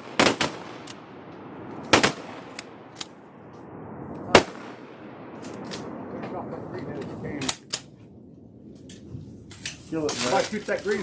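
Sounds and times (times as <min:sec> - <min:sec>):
shotgun blasts: 0:00.0 - 0:03.0, 0:04.3 - 0:06.1
faint shots: 0:00.0 - 0:03.2, 0:04.3 - 0:06.5.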